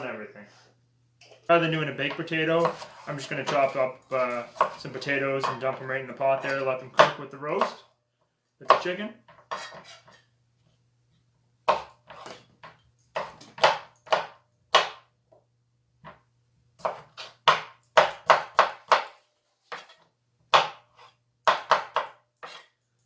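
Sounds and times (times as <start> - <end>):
knife chopping on cutting board: 4.5 - 5.6, 7.0 - 7.8, 8.6 - 8.9, 11.6 - 12.4, 13.1 - 15.0, 16.8 - 22.7.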